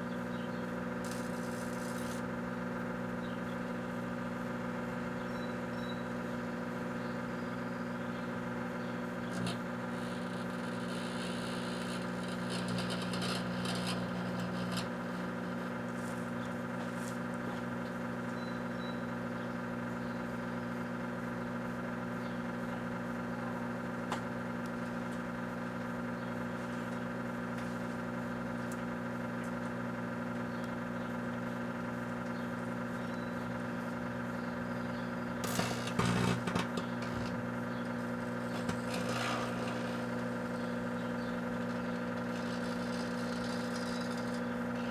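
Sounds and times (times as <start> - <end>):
microwave oven humming: 0.0 - 44.9.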